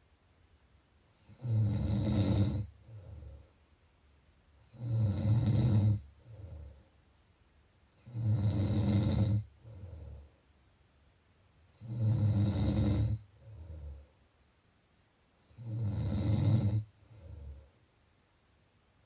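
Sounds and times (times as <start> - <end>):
person snoring: 1.2 - 3.5, 4.6 - 6.8, 8.0 - 10.3, 11.8 - 14.1, 15.5 - 17.7.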